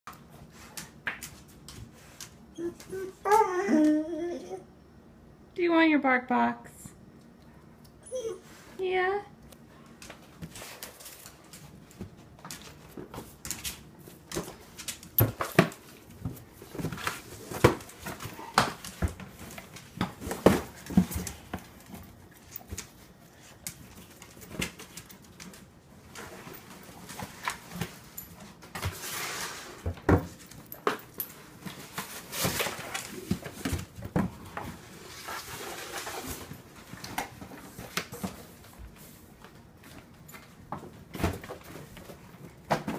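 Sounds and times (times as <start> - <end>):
dog rummaging in cardboard box: 14.4 - 22.8, 31.5 - 38.7.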